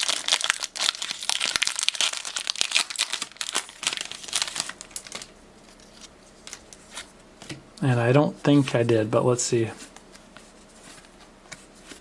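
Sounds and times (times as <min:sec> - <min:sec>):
plastic wrapper crinkling: 0:00.0 - 0:06.9.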